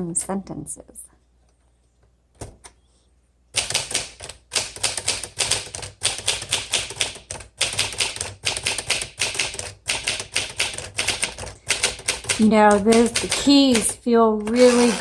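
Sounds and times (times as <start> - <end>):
manual typewriter typing: 3.6 - 15.0.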